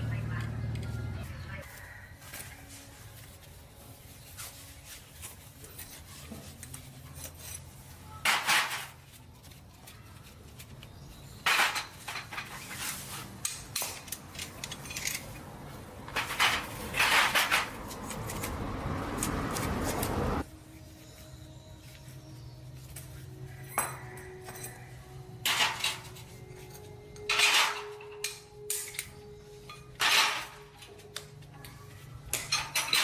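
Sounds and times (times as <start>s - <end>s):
metal tools clinking: 5.5s - 18.6s, 22.8s - 33.0s.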